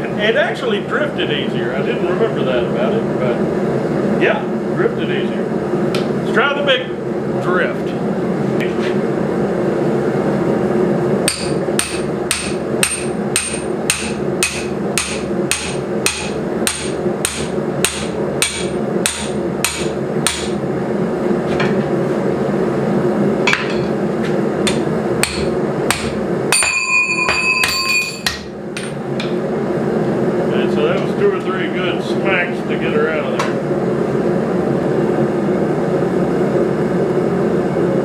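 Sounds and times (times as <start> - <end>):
hammer striking steel: 11.3 - 20.6, 24.6 - 29.4
bright metal clang: 26.0 - 29.4.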